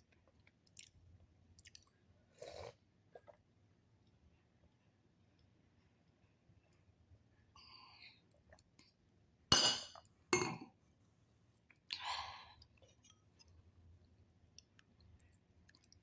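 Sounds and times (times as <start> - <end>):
tableware clatter: 9.5 - 10.7
tableware clinking: 9.5 - 10.7.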